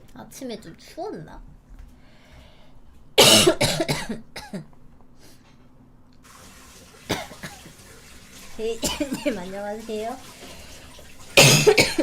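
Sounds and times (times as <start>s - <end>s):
young woman coughing: 3.2s - 4.7s, 7.1s - 7.6s, 8.8s - 9.4s, 11.4s - 12.0s.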